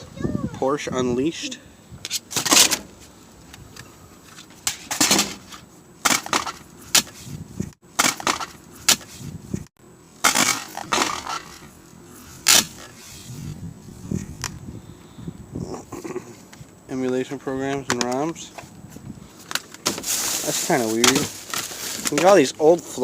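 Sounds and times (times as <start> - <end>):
cd cases clattering: 19.4 - 22.5.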